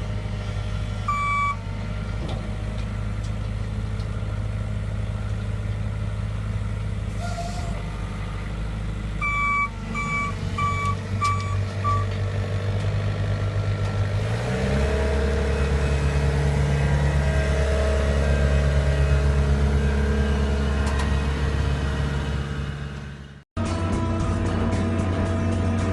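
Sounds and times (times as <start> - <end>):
diesel engine running: 0.0 - 25.9
reversing alarm beeping: 1.1 - 1.6, 9.2 - 12.1.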